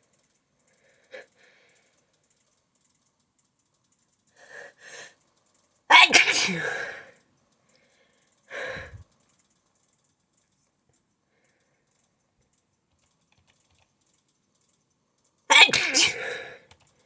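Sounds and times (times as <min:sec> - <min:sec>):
person sneezing breath: 0:05.9 - 0:07.1, 0:08.5 - 0:09.0, 0:15.5 - 0:16.6
faint keyboard tapping: 0:09.0 - 0:15.4, 0:16.6 - 0:17.0.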